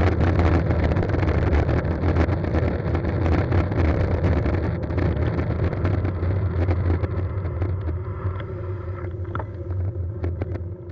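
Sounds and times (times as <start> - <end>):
road and traffic rumble: 0.0 - 10.9
wind rushing over microphone: 0.0 - 10.9
small clicks and knocks: 3.2 - 10.9.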